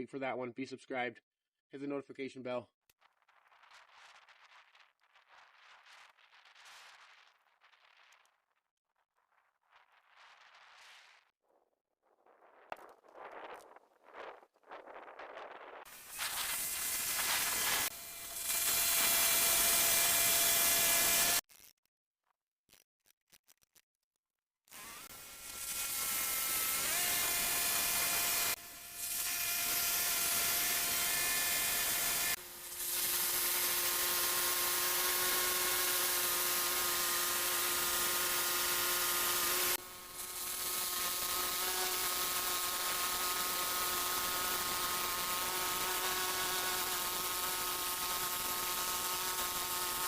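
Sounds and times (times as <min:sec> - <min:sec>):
sawmill cutting log: 0:15.9 - 0:21.4, 0:24.7 - 0:50.0.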